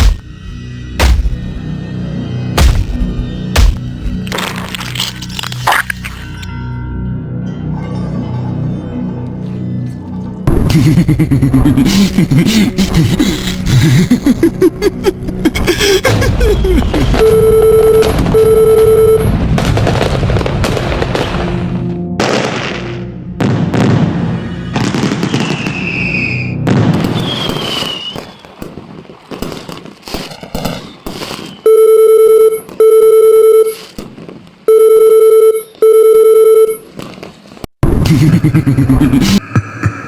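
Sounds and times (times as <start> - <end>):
electronic tone beeping: 17.0 - 19.3, 31.7 - 33.8, 34.7 - 36.8
fireworks bangs and rumbling: 19.3 - 31.6
falling firework whistles: 24.4 - 28.8, 30.6 - 31.6.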